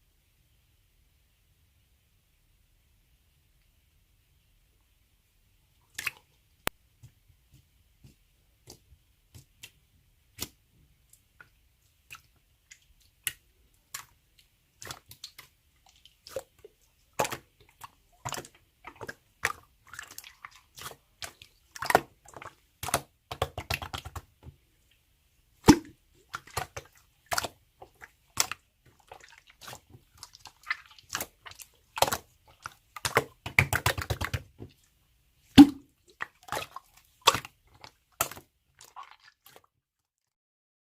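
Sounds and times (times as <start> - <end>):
slime clicking and popping: 33.0 - 34.4.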